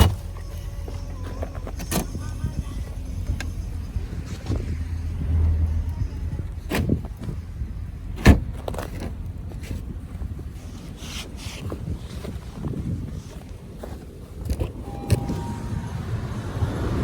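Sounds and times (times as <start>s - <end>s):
low rumble: 14.7s - 17.0s.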